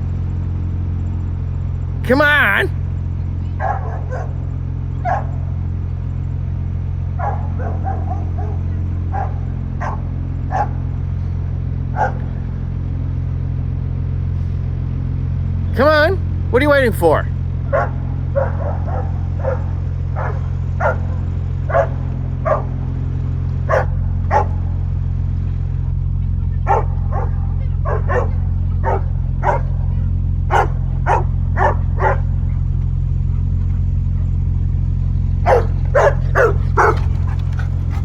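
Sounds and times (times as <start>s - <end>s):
steady low hum: 0.0s - 38.0s
dog barking: 3.6s - 4.4s, 5.0s - 5.4s, 7.2s - 10.9s, 11.9s - 12.4s, 17.7s - 22.8s, 23.7s - 24.6s, 26.6s - 32.4s, 35.4s - 38.0s.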